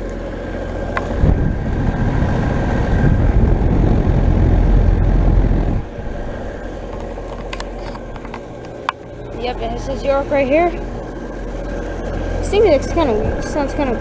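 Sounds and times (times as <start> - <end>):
heat pump humming: 0.0 - 14.0
wind buffeting microphone: 0.5 - 8.8.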